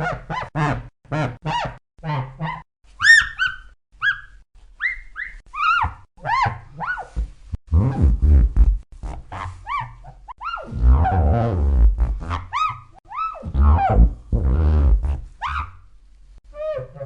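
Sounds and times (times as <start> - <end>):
squeaky dog toy squeaking: 2.0 - 7.0.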